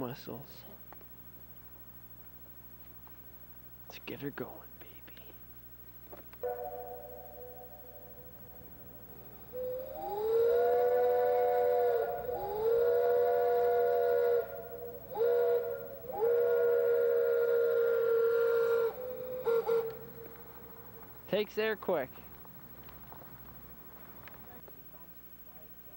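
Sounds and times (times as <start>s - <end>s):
three-chime air whistle: 6.4s - 20.8s.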